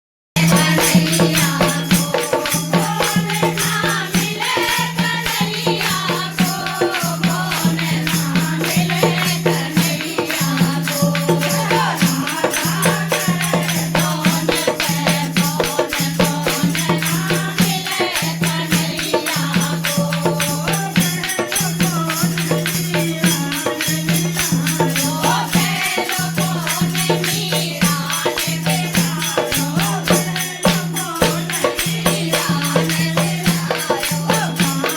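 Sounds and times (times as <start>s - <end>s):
jingling hand percussion: 0.4s - 34.9s.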